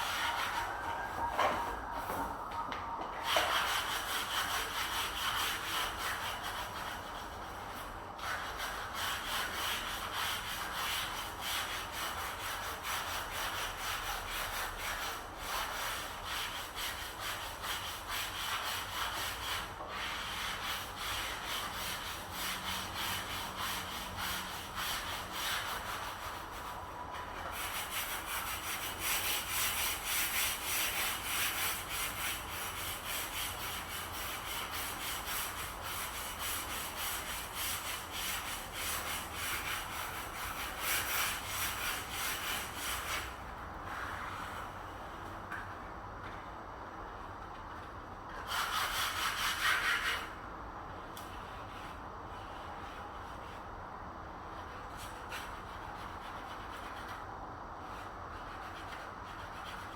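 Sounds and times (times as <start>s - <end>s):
hand tool rubbing against wood: 0.0s - 2.6s.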